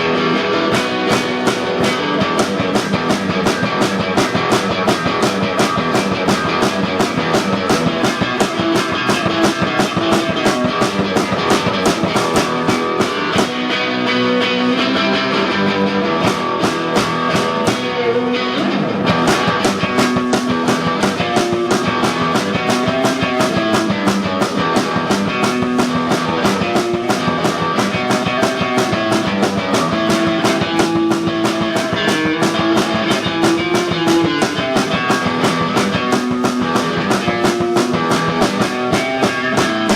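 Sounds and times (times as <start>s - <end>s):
distorted electric guitar: 0.0s - 39.9s
fast driving drums: 0.0s - 39.9s.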